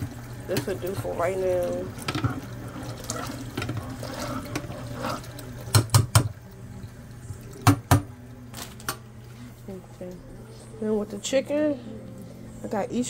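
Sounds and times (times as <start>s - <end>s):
water splashing: 0.0s - 10.4s
tap running into sink: 2.0s - 2.6s, 5.6s - 6.4s, 7.3s - 9.0s.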